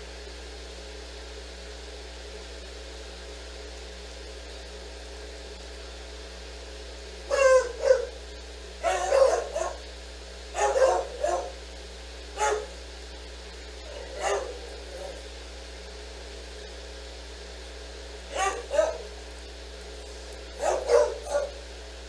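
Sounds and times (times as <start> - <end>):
low room hum: 0.0 - 22.0
dog barking: 7.3 - 8.2, 8.8 - 9.9, 10.5 - 11.6, 12.4 - 12.8, 13.8 - 15.3, 18.3 - 19.2, 20.5 - 21.6.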